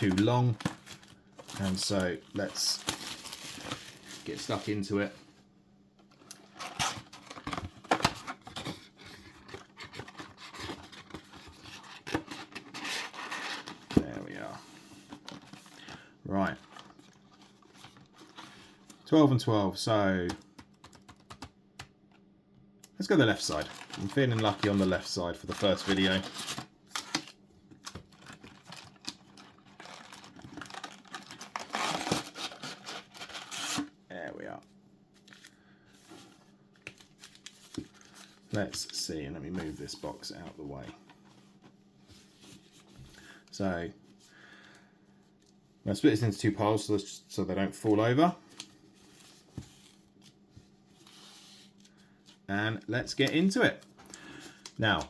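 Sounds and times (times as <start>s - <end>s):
foil crinkling: 0.0s - 4.9s, 23.4s - 33.8s
plastic wrap and cardboard rustling: 0.0s - 5.3s, 6.2s - 19.4s, 23.0s - 34.4s.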